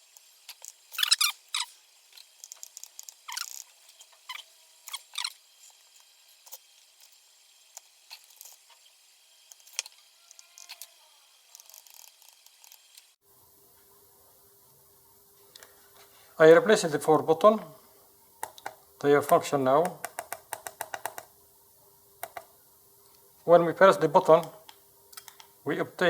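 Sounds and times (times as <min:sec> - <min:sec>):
hand tools clicking on circuit board: 0:18.4 - 0:21.3, 0:24.4 - 0:25.5.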